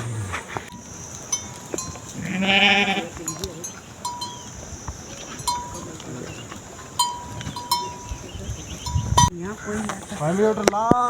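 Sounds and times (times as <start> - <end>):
animal neck bells clinking: 0.0 - 9.3
sheep or goat bleating: 2.2 - 3.2.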